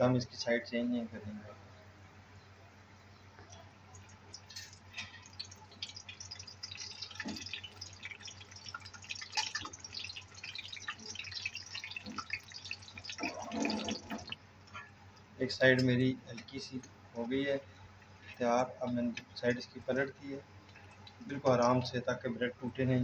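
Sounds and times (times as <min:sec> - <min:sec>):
sandwich frying in a pan: 0:04.0 - 0:14.4.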